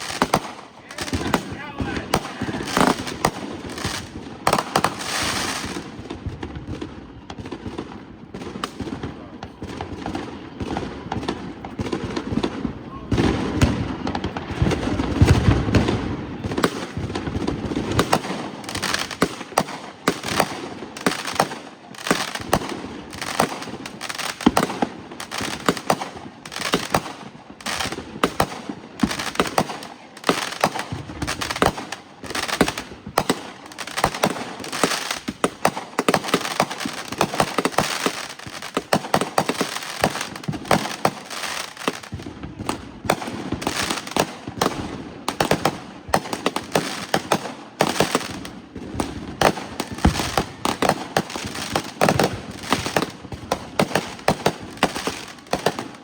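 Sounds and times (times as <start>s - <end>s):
fireworks bangs and crackles: 0.0s - 56.0s.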